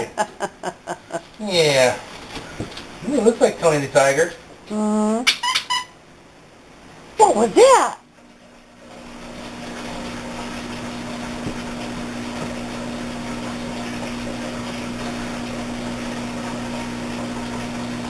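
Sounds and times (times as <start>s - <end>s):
motor-driven appliance running: 8.8s - 18.0s.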